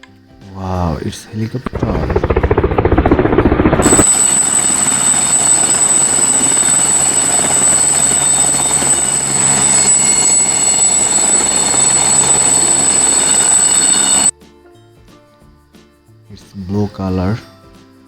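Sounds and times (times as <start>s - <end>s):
toy helicopter whirring: 1.7s - 14.3s.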